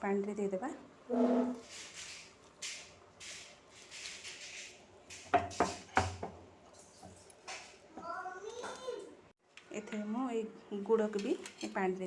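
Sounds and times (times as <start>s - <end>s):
utensil knocking against pot: 5.3s - 6.4s.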